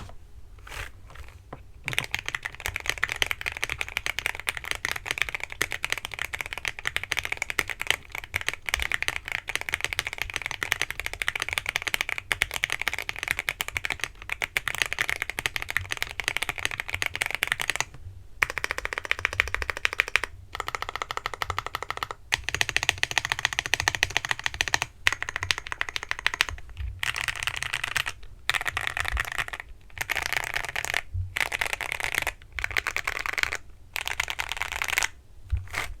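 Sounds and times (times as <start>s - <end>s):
mechanical keyboard typing: 1.8s - 35.9s.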